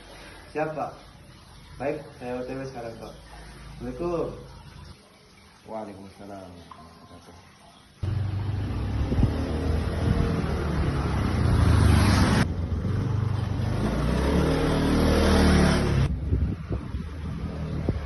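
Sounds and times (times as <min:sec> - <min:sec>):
vehicle engine revving: 0:08.1 - 0:16.1.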